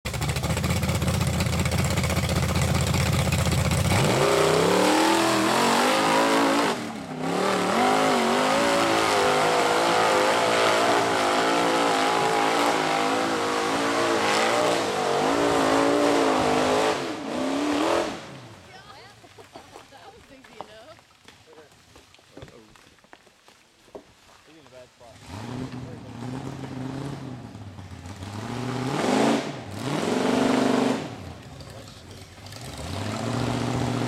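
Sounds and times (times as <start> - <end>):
off-road vehicle engine revving: 0.1 - 18.7, 25.1 - 34.0.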